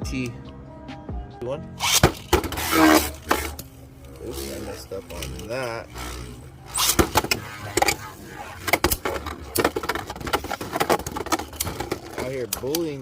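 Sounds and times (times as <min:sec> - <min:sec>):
whirring spin: 0:04.3 - 0:10.7.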